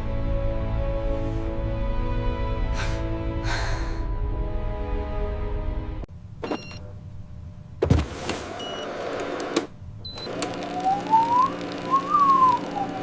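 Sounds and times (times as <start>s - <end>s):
motorised whine: 8.9s - 13.0s.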